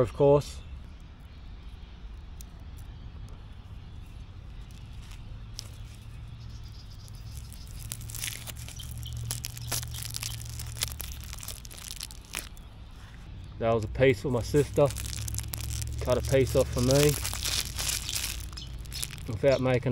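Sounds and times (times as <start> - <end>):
steady low rumble: 0.0 - 19.9.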